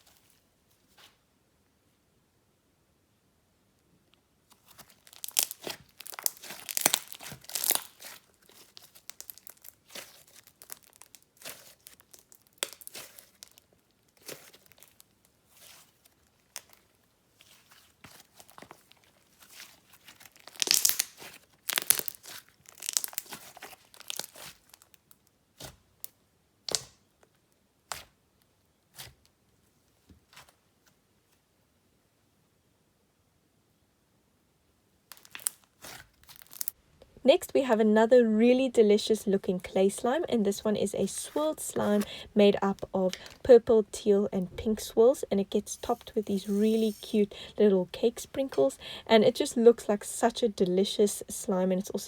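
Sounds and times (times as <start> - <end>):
slime squished by hand: 4.8 - 13.6, 19.5 - 25.0, 35.1 - 36.8
wet slime popping: 4.9 - 13.6, 20.2 - 24.8, 36.2 - 36.8.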